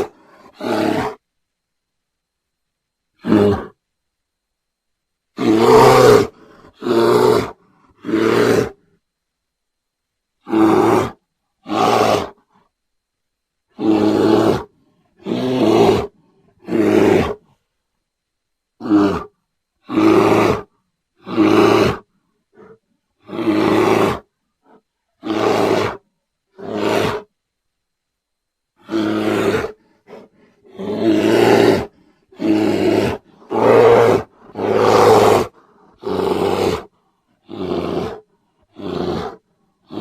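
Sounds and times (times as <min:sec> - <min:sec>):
bear roaring and growling: 0:00.0 - 0:01.2, 0:03.2 - 0:03.8, 0:05.4 - 0:08.8, 0:10.4 - 0:12.4, 0:13.7 - 0:17.5, 0:18.8 - 0:27.3, 0:28.8 - 0:40.0.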